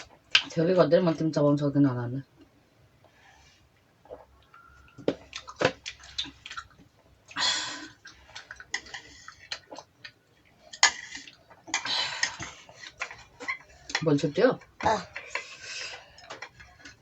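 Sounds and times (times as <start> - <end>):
wet chewing and mouth smacks: 3.0 - 14.0.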